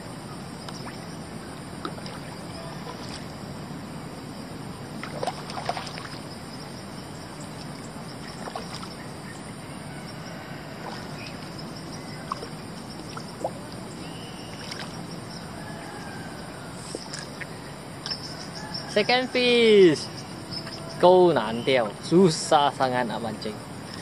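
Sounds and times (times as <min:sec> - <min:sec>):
flowing river water: 0:00.0 - 0:22.9
sharp knocks or splashes: 0:05.0 - 0:06.2, 0:08.4 - 0:08.9.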